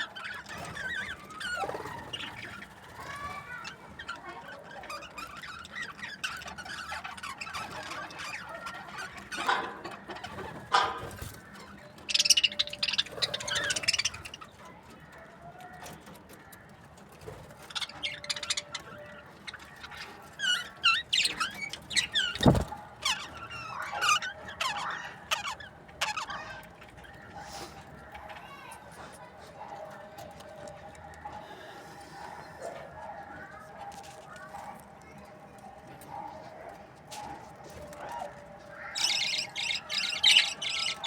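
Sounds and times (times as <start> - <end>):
budgerigars chirping: 0.0 - 3.6, 4.2 - 14.6, 17.5 - 27.8, 38.1 - 41.0.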